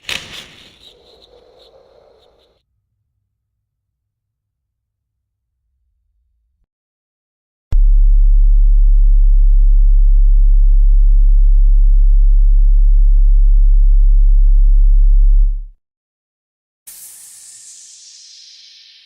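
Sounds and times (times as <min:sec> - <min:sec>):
deep steady hum: 0:07.8 - 0:15.6.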